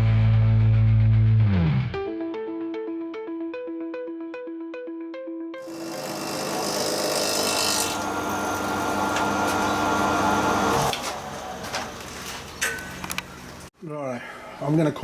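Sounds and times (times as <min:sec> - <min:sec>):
power tool grinding metal: 0:05.6 - 0:11.3.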